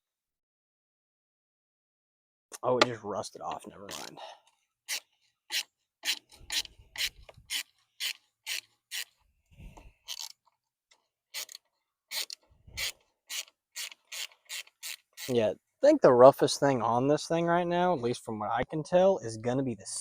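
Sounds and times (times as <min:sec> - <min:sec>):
ratchet wrench clicking: 0:04.9 - 0:09.1, 0:10.1 - 0:10.4, 0:11.3 - 0:15.3.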